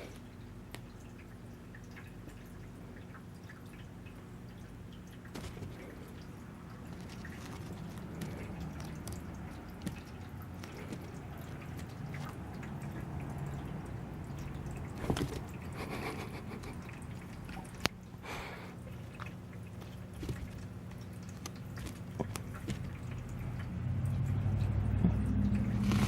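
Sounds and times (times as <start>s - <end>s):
low room hum: 0.0s - 26.0s
faint clicks and rustles: 4.6s - 13.8s, 18.8s - 23.7s.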